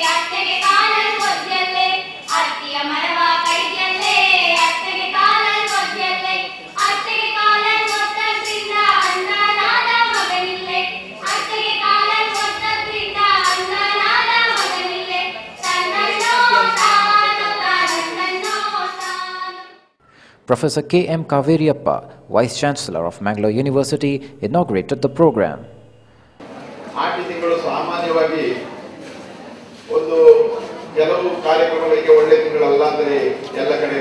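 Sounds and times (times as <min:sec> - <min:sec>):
voices singing folk song: 0:00.0 - 0:19.8.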